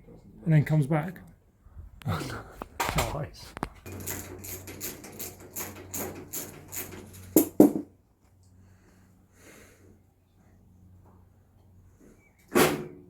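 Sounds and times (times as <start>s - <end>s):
rhythmic scraping on metal: 3.8s - 7.6s.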